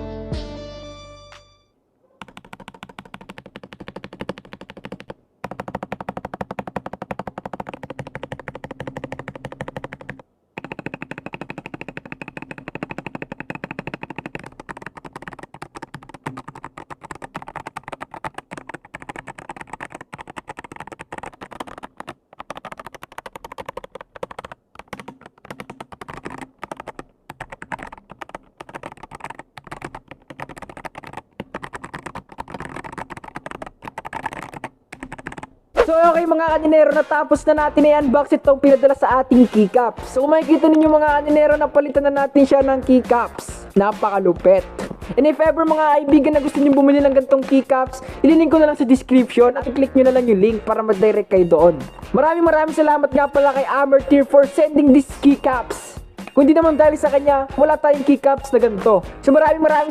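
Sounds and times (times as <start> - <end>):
mechanical keyboard typing: 2.2 - 36.2, 45.6 - 49.3.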